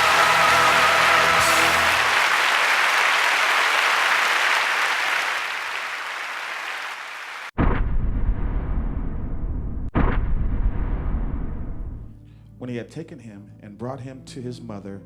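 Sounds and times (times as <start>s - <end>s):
accompanying music: 0.0s - 4.2s
congregation applauding: 0.0s - 7.6s.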